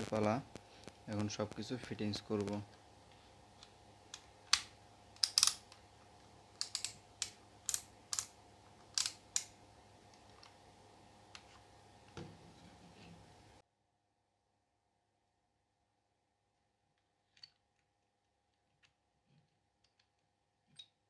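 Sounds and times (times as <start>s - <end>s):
plastic parts clicking: 4.5s - 5.8s, 6.6s - 8.3s, 8.9s - 9.5s.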